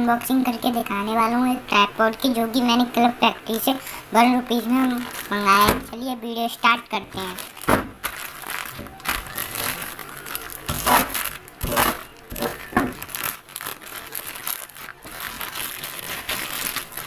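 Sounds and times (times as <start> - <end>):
plastic packaging crinkling: 3.8 - 17.0.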